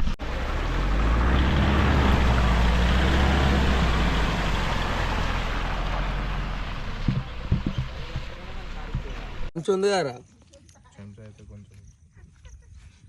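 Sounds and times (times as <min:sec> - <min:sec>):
vehicle engine humming: 0:00.0 - 0:09.6.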